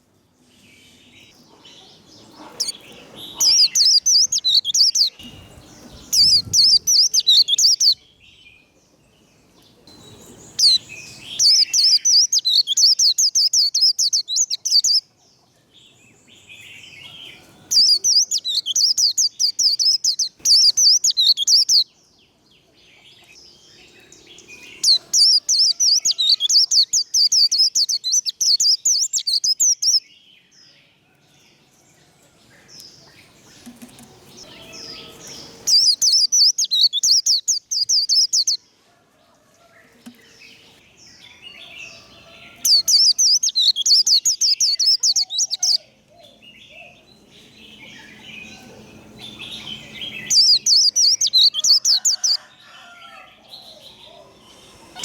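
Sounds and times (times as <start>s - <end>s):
bird high twittering song: 0.0s - 31.0s, 32.6s - 38.7s, 40.0s - 55.0s.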